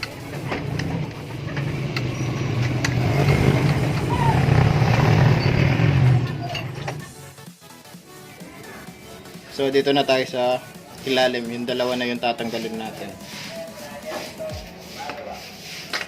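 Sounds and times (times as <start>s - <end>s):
vehicle engine running: 0.0s - 7.2s.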